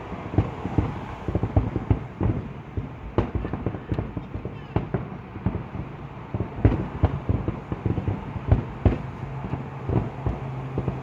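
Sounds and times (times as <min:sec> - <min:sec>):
fireworks bangs and crackles: 0:00.0 - 0:11.0.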